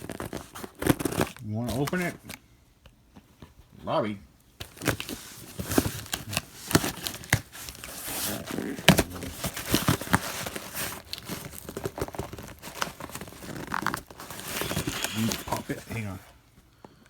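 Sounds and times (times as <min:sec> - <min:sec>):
tape and packing crinkling: 0:00.0 - 0:02.0, 0:04.6 - 0:16.1.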